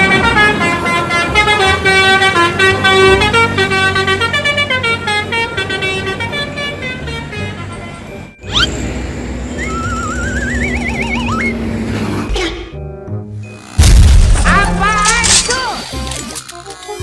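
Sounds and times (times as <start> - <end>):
musical air horns playing tune: 0.0 - 8.3.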